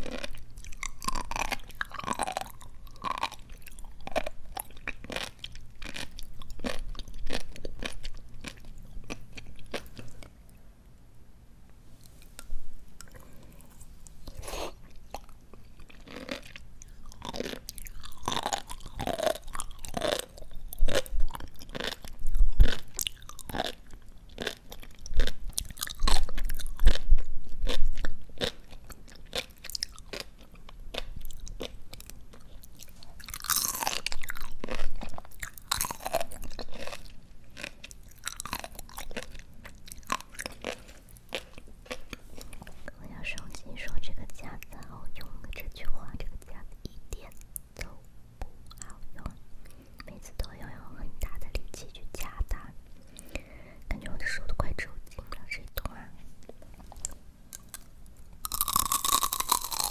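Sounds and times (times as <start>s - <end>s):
chewing crisp raw greens: 0.0s - 10.6s, 12.0s - 44.4s, 56.4s - 59.9s.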